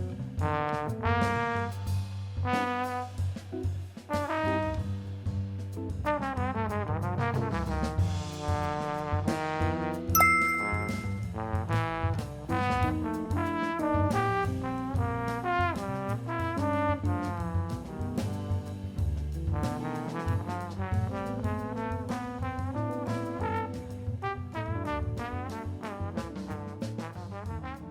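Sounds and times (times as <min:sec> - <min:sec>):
backing track with bass: 0:00.0 - 0:08.0, 0:10.2 - 0:27.9.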